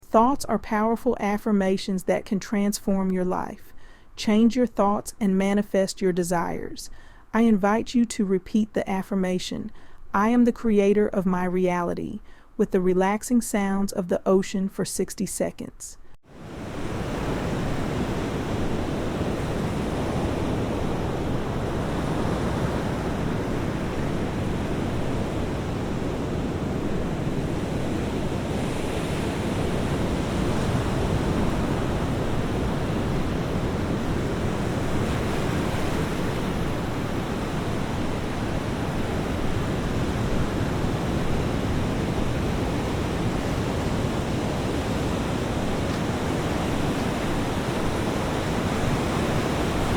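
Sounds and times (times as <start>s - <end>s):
ocean waves breaking on beach: 16.3s - 49.9s.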